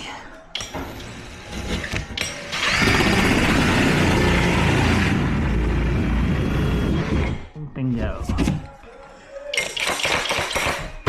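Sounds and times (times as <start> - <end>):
power drill cutting drywall: 1.5 - 5.4.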